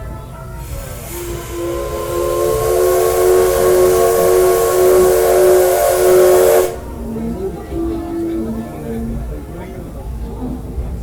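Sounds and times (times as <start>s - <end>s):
steam locomotive whistle: 0.0s - 9.4s
steam hissing: 0.0s - 10.7s.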